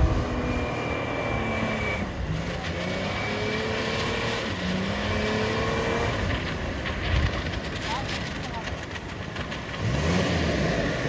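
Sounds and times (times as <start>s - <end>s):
off-road engine revving: 0.0s - 6.7s, 9.7s - 11.0s.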